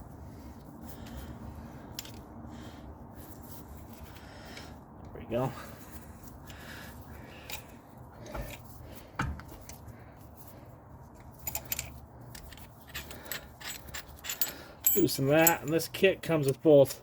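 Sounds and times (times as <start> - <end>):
metal parts clicking and clinking: 1.9 - 2.3, 11.2 - 16.6.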